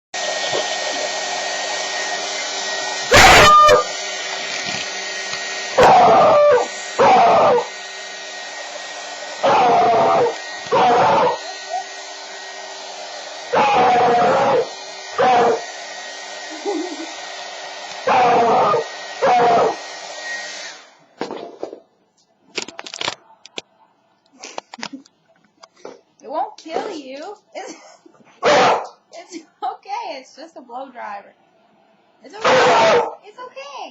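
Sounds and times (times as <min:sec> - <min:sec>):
hair dryer running: 0:00.2 - 0:21.0
puppy howling: 0:03.1 - 0:03.9, 0:05.8 - 0:07.7, 0:09.4 - 0:12.0, 0:13.5 - 0:15.6, 0:18.1 - 0:19.8, 0:32.4 - 0:33.2.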